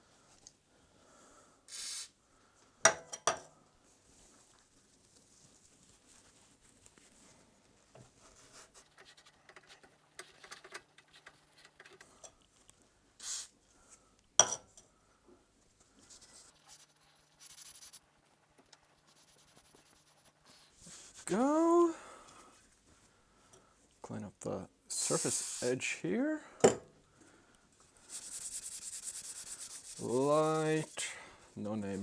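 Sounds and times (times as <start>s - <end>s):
short hisses: 1.7s - 2.2s, 25.0s - 25.8s
rubbing and scrubbing metal parts: 28.0s - 31.1s.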